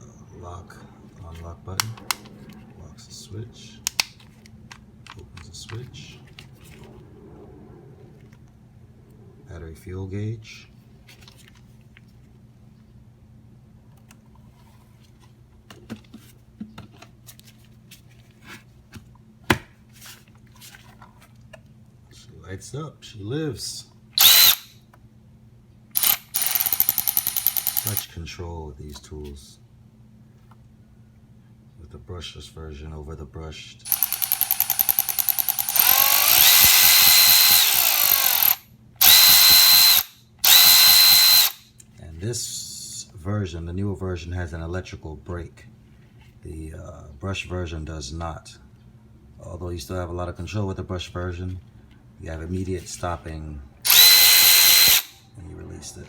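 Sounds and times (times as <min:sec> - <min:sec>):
power ratchet motor whine: 0:24.2 - 0:24.8, 0:26.0 - 0:28.1, 0:33.9 - 0:41.6, 0:53.8 - 0:55.2.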